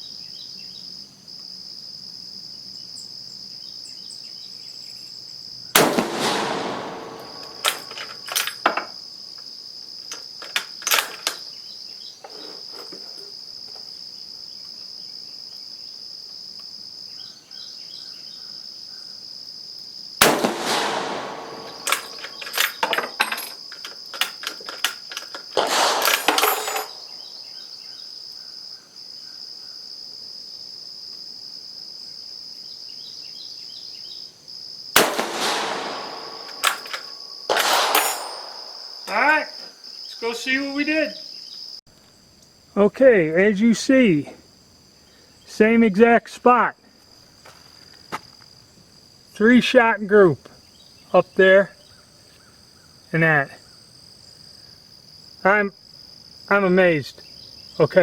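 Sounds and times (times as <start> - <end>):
high insect drone: 0.0 - 58.0
rifle shots: 5.8 - 8.5, 20.2 - 23.2, 25.6 - 27.2, 35.0 - 39.0
rifle bolt clicking and clatter: 5.8 - 8.9, 10.4 - 11.4, 20.2 - 27.0, 35.0 - 38.7.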